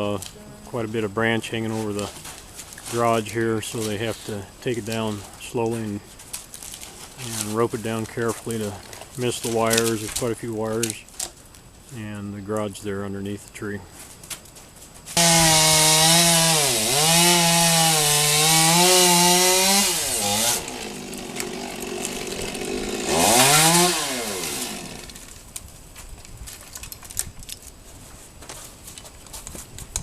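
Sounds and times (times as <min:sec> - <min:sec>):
chainsaw cutting wood: 0:15.2 - 0:25.4.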